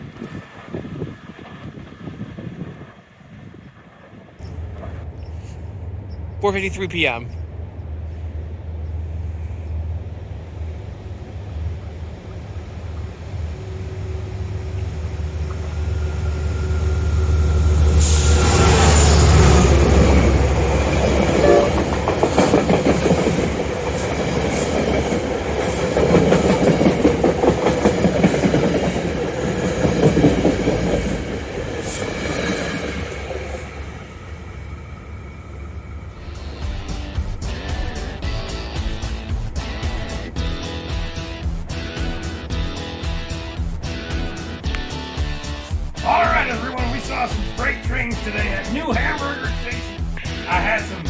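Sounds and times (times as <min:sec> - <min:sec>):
train rumble: 0:00.0 - 0:51.0
train horn: 0:13.0 - 0:26.5
train wheels clattering over rail joints: 0:14.4 - 0:51.0.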